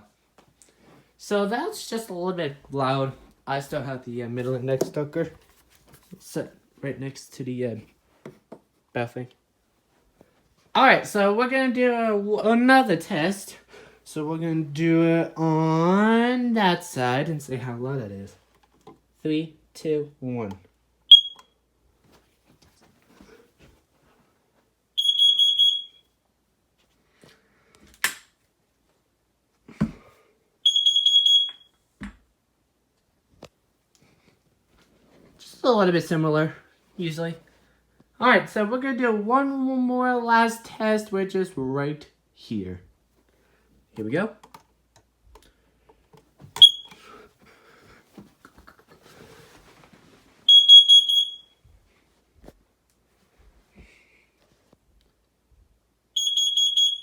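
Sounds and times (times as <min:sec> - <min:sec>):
smoke alarm shrill beeping: 0:21.1 - 0:21.6, 0:25.0 - 0:26.1, 0:30.6 - 0:31.8, 0:46.6 - 0:47.0, 0:50.5 - 0:51.6, 0:56.2 - 0:57.0.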